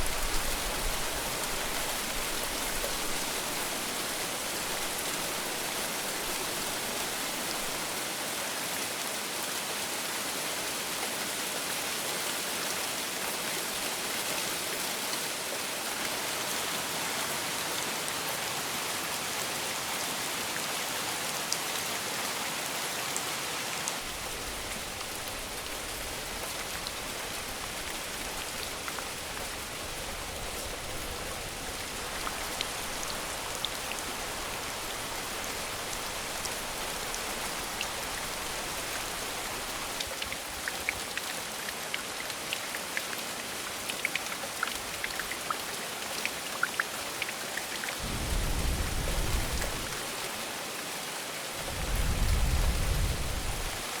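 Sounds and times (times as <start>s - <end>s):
rain hissing: 0.0s - 7.9s, 24.0s - 40.0s, 48.0s - 50.4s, 51.5s - 54.0s.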